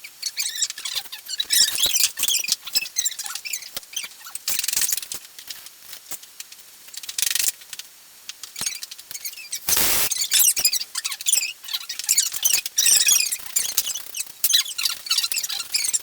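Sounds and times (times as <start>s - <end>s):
short bursts of hiss: 9.7s - 10.1s.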